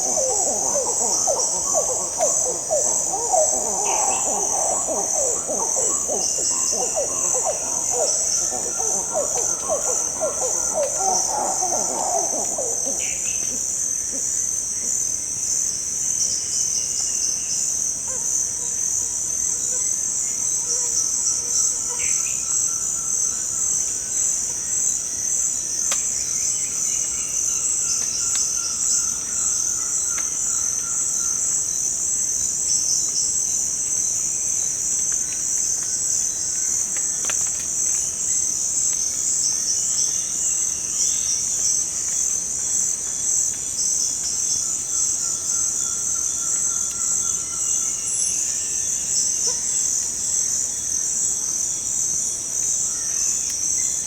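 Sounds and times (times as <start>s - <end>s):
lower repeated calls: 0.0s - 13.7s
insect chorus trilling: 0.0s - 54.0s.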